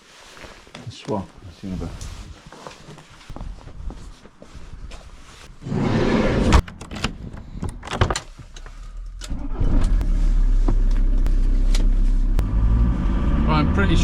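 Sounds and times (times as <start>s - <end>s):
rustling: 0.0s - 6.2s, 8.2s - 12.4s
car engine starting and idling: 8.8s - 14.0s.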